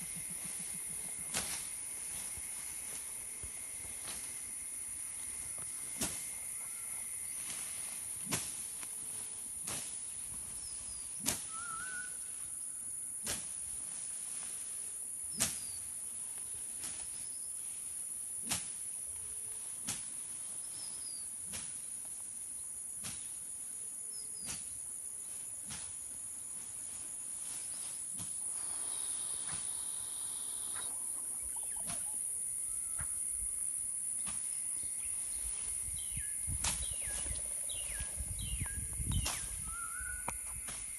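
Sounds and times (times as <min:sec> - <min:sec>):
high-pitched insect drone: 0:00.0 - 0:08.0, 0:28.3 - 0:40.9
faint bird chirps: 0:10.6 - 0:12.6, 0:28.5 - 0:33.6, 0:34.8 - 0:40.9.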